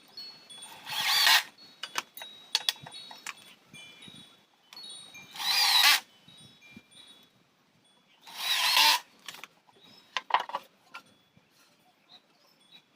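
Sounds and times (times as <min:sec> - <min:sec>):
power drill driving screws: 0:00.8 - 0:01.5, 0:05.4 - 0:06.0, 0:08.3 - 0:09.0.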